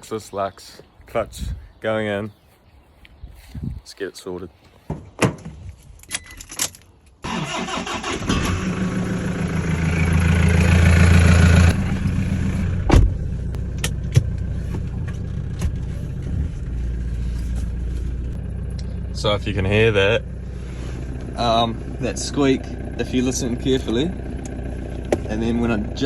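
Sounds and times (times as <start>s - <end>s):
engine starting and idling: 7.2s - 26.0s.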